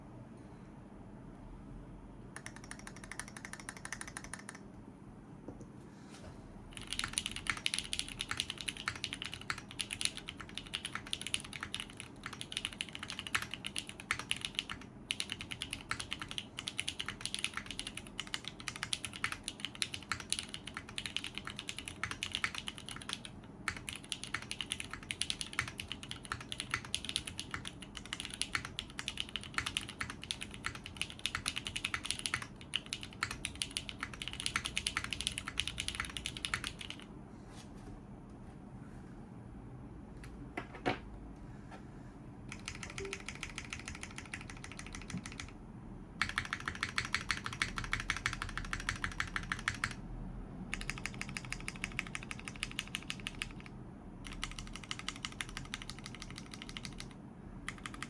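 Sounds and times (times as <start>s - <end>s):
typing on mechanical keyboard: 2.4s - 4.7s, 6.7s - 37.1s, 42.5s - 50.0s, 50.6s - 58.0s.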